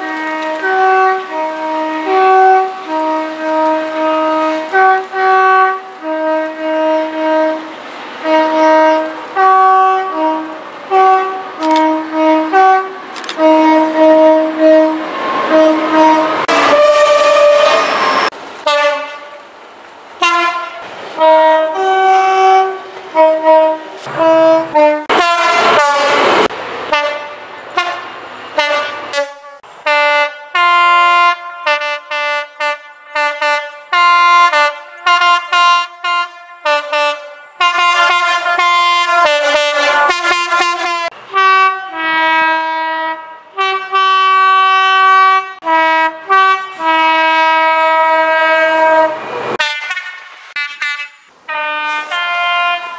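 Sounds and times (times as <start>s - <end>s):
locomotive two-tone horn blasts: 0.0s - 19.4s, 20.2s - 52.9s
passing train rush: 0.0s - 52.9s.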